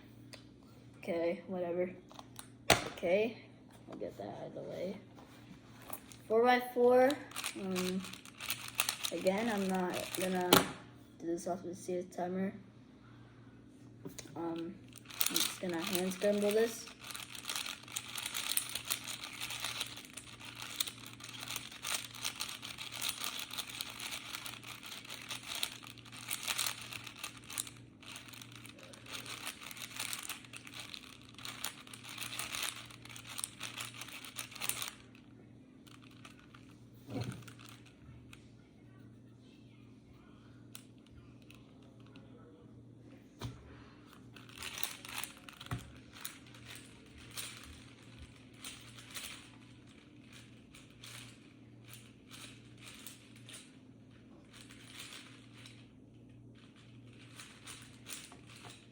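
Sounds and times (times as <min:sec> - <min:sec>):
steady low hum: 0:00.0 - 0:58.9
puzzle cube clicking and rattling: 0:07.1 - 0:10.7, 0:14.9 - 0:35.2, 0:35.9 - 0:37.9, 0:44.4 - 0:53.8, 0:54.4 - 0:55.8, 0:56.6 - 0:58.9.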